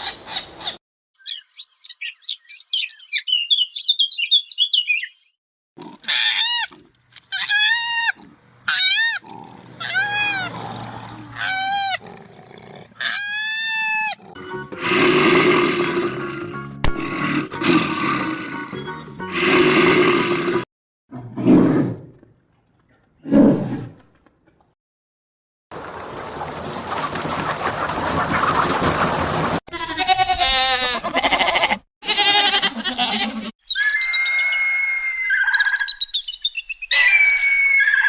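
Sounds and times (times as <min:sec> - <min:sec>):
animal calls and roars: 0:05.8 - 0:16.2, 0:19.4 - 0:24.7, 0:33.2 - 0:36.1, 0:36.9 - 0:38.0.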